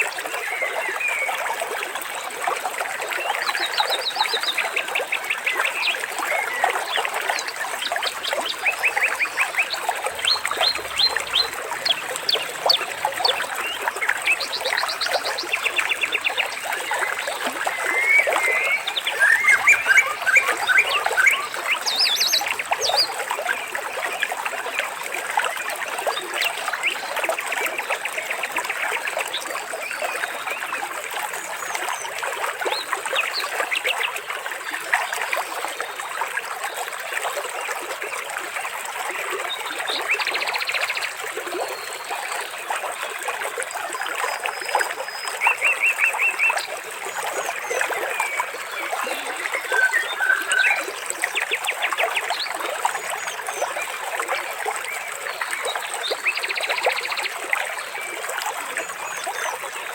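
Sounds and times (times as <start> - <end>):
water trickling and splashing: 0.0 - 59.9.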